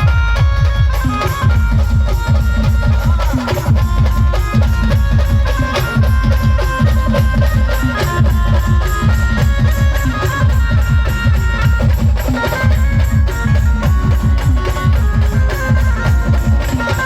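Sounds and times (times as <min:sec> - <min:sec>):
fast drum beat: 0:00.0 - 0:17.0
instrumental band music: 0:00.0 - 0:17.0.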